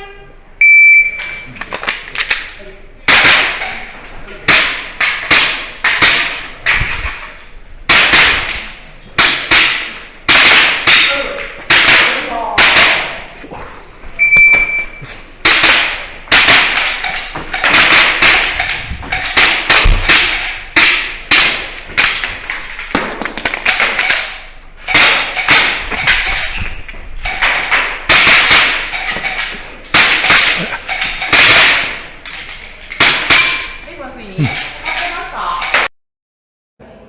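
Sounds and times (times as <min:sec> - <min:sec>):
airsoft pistol firing: 0:07.9 - 0:13.2
pellets clanging on steel plates: 0:27.2 - 0:35.9.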